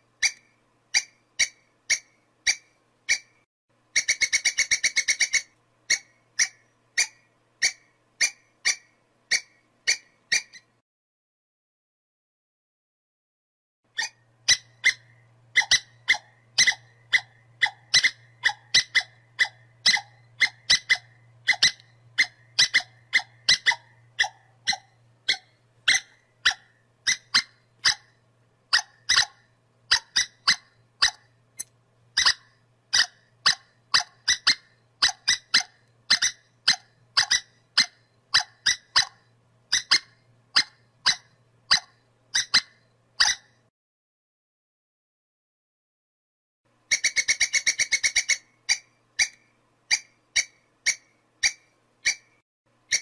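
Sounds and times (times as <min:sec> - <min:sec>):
squirrel chirping: 0:00.2 - 0:10.8, 0:13.9 - 0:43.6, 0:46.9 - 0:53.0
faint low hum: 0:14.0 - 0:43.7.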